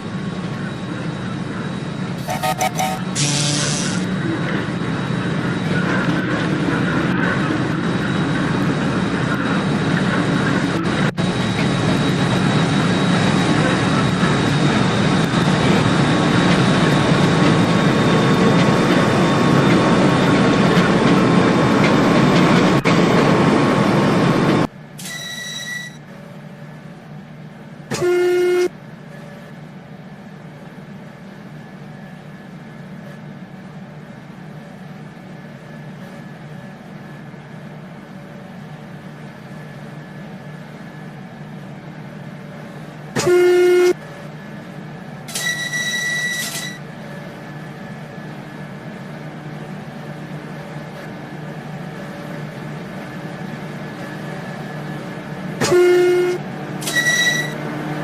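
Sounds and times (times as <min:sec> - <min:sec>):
train wheels rumbling on rails: 0:00.0 - 0:25.2
train horn toots: 0:02.2 - 0:04.1, 0:27.9 - 0:28.7, 0:43.2 - 0:44.0, 0:55.6 - 0:57.6.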